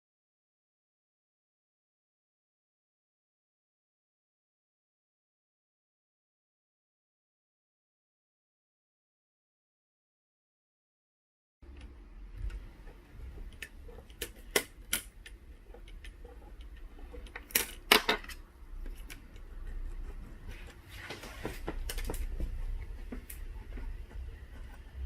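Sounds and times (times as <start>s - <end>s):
small hard parts clicking: 12.4s - 20.0s.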